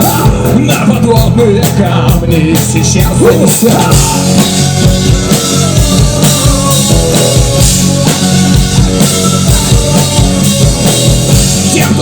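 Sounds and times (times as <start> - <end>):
bass drum beat: 0.0 - 12.0
live rock band playing: 0.0 - 12.0.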